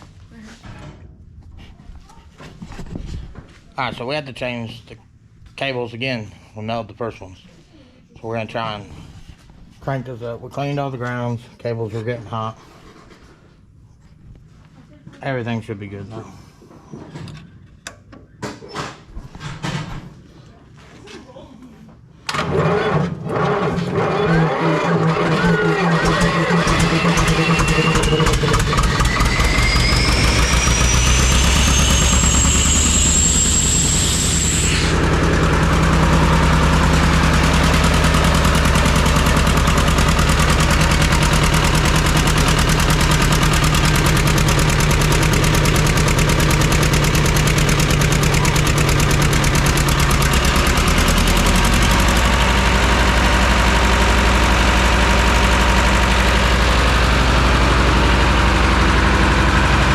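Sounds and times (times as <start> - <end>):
diesel engine running: 22.3 - 59.9
high whine: 23.9 - 50.8.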